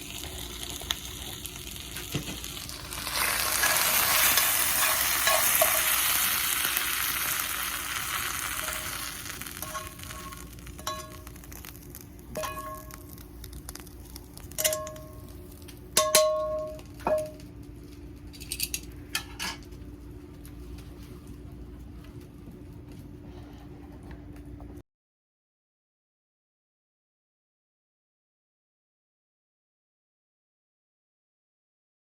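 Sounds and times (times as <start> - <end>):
food sizzling in a frying pan: 0.0 - 18.2
utensil clinking on cookware: 3.6 - 6.2, 9.6 - 11.3, 12.3 - 13.2, 14.6 - 15.3, 16.0 - 17.4.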